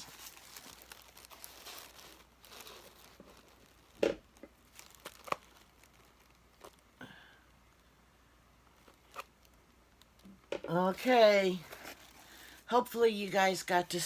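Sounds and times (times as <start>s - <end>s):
paper rustling and crinkling: 0.0s - 6.9s, 11.0s - 12.7s.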